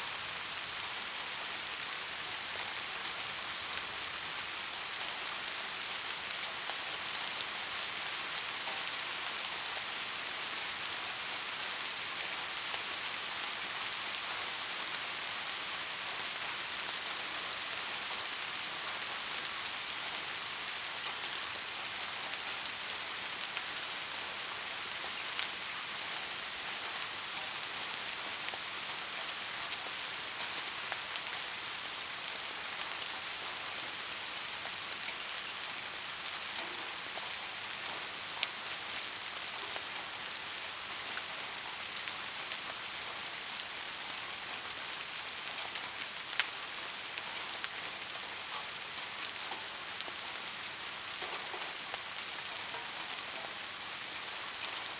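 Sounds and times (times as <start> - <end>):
steady rain hiss: 0.0 - 54.9
rain drop ticks: 34.6 - 40.1, 45.5 - 50.4, 51.0 - 53.8.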